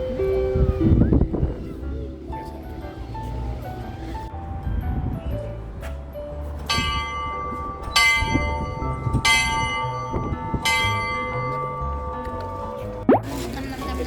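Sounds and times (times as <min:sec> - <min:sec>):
bell ringing: 0:06.7 - 0:13.1.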